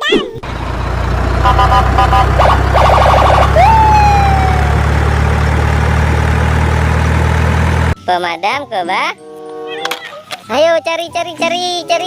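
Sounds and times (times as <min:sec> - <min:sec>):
low engine rumble: 0:00.4 - 0:08.0
siren wail: 0:01.4 - 0:07.3.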